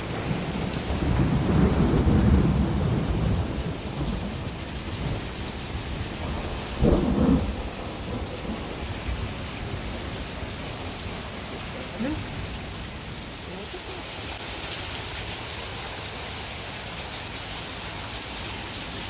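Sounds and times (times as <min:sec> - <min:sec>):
thunder rumbling: 0:00.0 - 0:14.1
steady rain: 0:00.0 - 0:19.0.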